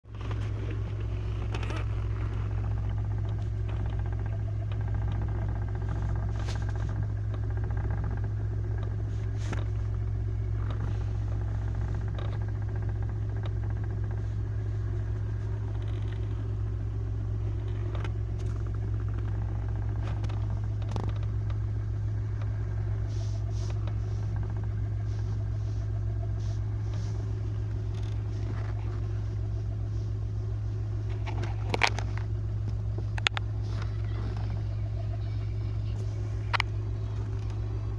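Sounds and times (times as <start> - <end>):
car engine idling: 0.0 - 37.9
sharp engine knock clicks: 0.1 - 22.9.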